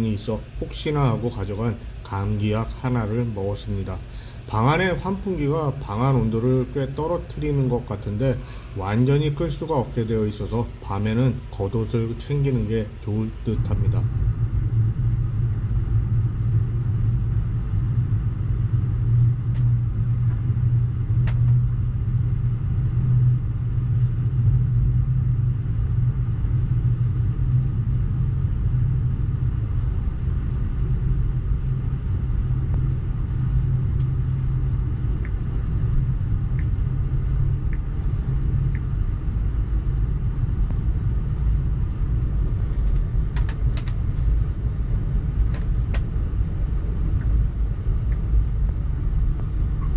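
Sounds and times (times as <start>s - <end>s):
train rumbling in motion: 0.0s - 49.9s
faint clicks and rattles: 42.5s - 44.2s.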